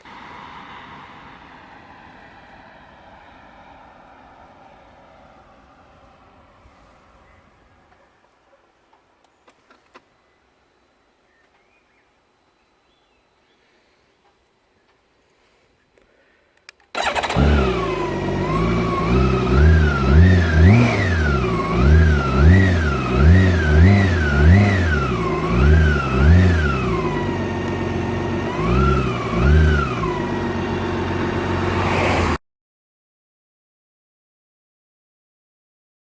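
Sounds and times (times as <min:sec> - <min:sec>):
motorcycle engine starting: 0:16.8 - 0:32.4
engine idling: 0:17.0 - 0:31.7
engine throttle blips: 0:17.0 - 0:32.4.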